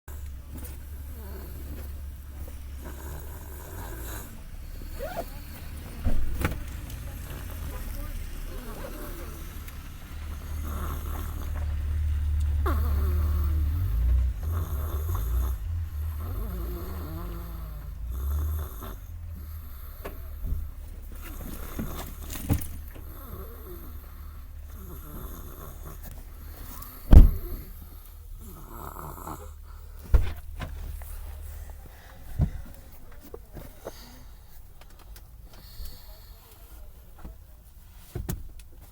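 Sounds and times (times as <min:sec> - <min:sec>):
person snoring: 0:01.0 - 0:02.0, 0:02.7 - 0:05.7, 0:10.3 - 0:11.7, 0:12.6 - 0:20.4, 0:23.0 - 0:27.8, 0:28.4 - 0:30.0.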